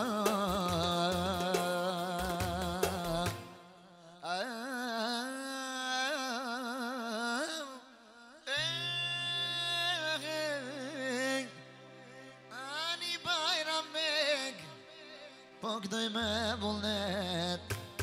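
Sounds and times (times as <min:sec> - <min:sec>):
ornamented folk melody: 0:00.0 - 0:04.2, 0:08.5 - 0:18.0.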